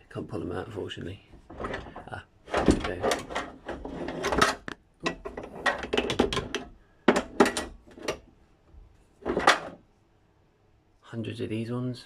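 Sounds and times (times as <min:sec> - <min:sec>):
heavy metal objects clattering: 0:01.4 - 0:08.2, 0:09.2 - 0:09.8.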